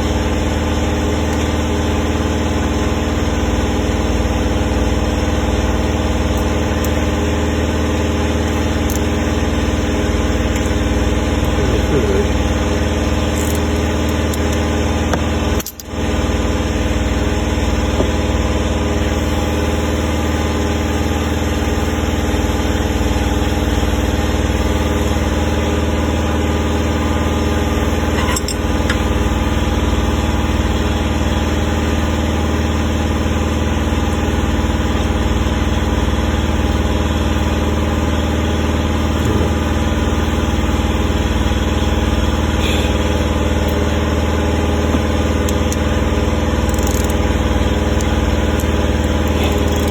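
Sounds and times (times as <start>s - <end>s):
motor humming: 0.0s - 31.3s, 38.7s - 49.9s.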